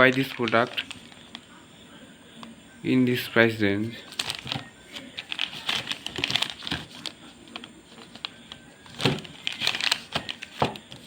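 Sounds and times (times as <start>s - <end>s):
crinkling handling noise: 0.0s - 1.5s, 3.8s - 11.0s.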